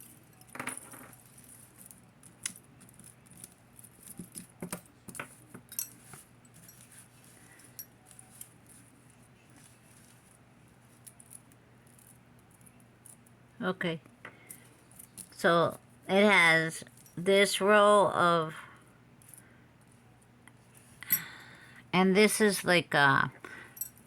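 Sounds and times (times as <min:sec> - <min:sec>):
necklace beads clinking: 0:00.0 - 0:18.1, 0:19.1 - 0:21.4, 0:23.7 - 0:24.0.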